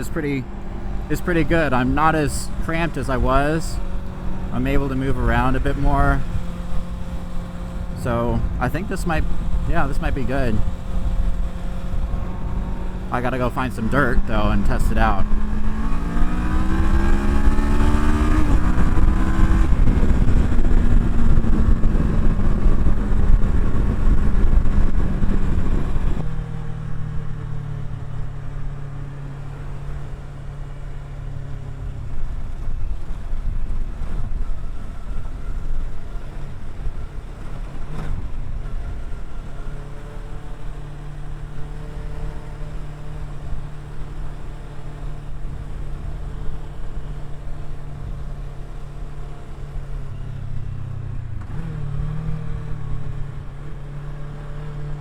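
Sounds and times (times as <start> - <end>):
loud wind noise: 0.0 - 26.3
motorcycle engine running: 0.0 - 55.0.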